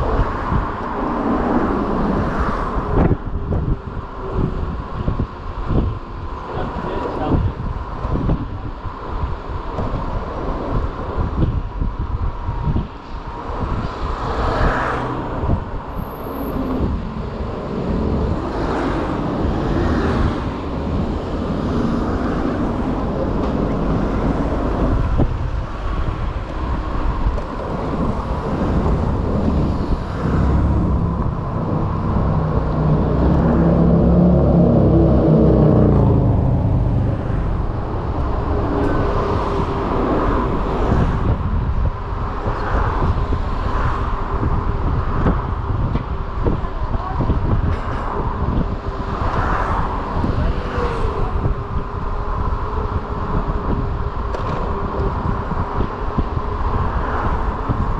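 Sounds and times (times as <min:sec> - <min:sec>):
city street traffic: 0:00.0 - 0:57.9
wind noise: 0:00.0 - 0:57.9
vehicle passing: 0:14.1 - 0:41.4.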